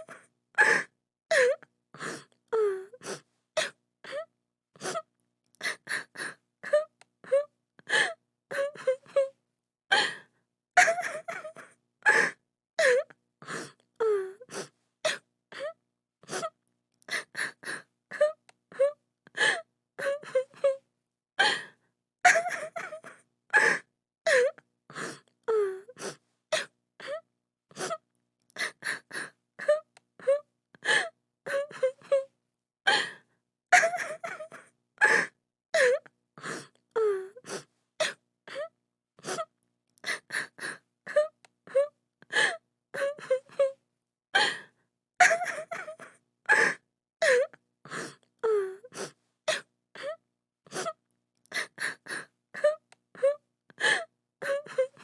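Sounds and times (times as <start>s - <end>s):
woman crying and sobbing: 10.8s - 13.0s, 22.3s - 24.5s, 33.7s - 36.0s, 45.2s - 47.5s.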